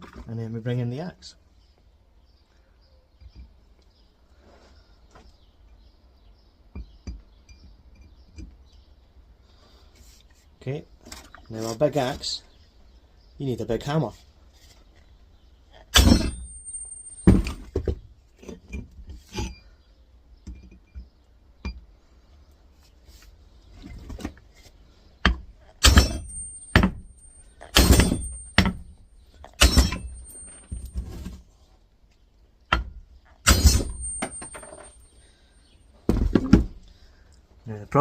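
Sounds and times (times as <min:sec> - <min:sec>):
metal knocks and clatter: 0:16.0 - 0:19.6, 0:25.3 - 0:31.4, 0:33.5 - 0:35.1
hammer striking axe head: 0:25.8 - 0:27.0, 0:27.7 - 0:28.8, 0:29.6 - 0:30.7, 0:33.5 - 0:34.8.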